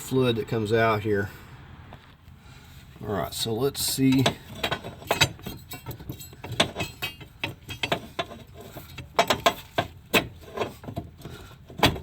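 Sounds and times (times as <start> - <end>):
crowbar knocking and clanking on metal: 3.9 - 12.0.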